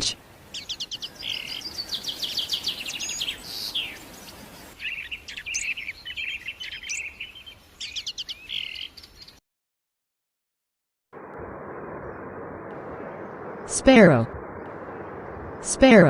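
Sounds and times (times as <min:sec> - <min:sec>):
goldfinch singing: 0:00.5 - 0:09.4.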